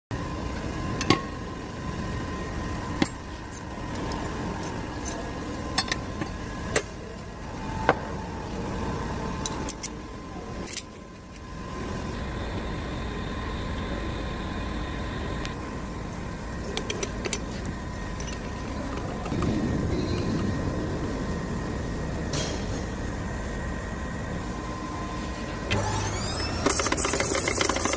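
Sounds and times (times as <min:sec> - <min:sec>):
sharpening machine humming: 0:25.7 - 0:27.9.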